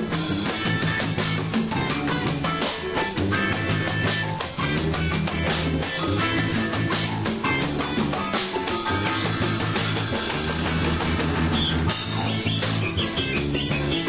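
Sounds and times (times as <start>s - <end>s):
rock band playing loud: 0.0s - 14.0s.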